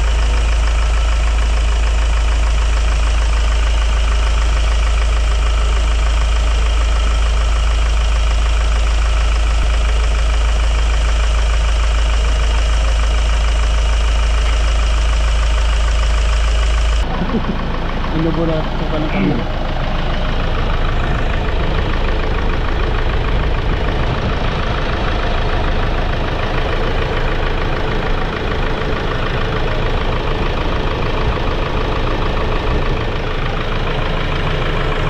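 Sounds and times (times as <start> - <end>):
engine idling with low rumble: 0.0 - 35.0.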